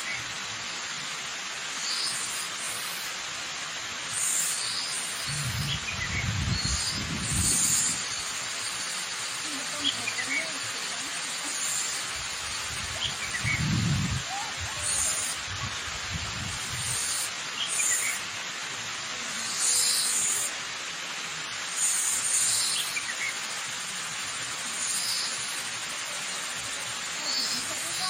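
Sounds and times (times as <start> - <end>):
waterfall rushing: 0.0 - 28.0
birds chirping: 4.1 - 18.2, 19.3 - 20.5, 21.7 - 28.0.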